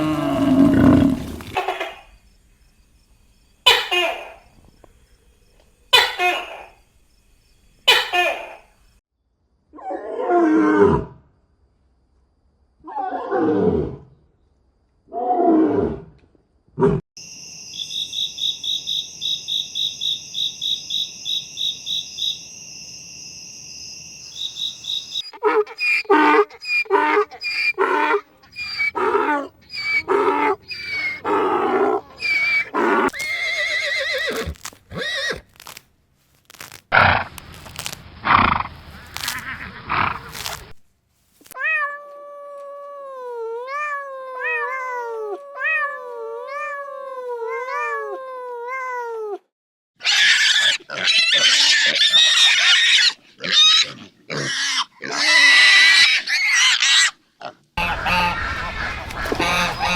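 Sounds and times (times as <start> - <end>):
loud harsh animal calls: 24.4 - 35.7, 50.0 - 57.2, 57.8 - 59.9
rapid short animal calls: 25.3 - 35.8, 57.8 - 59.9.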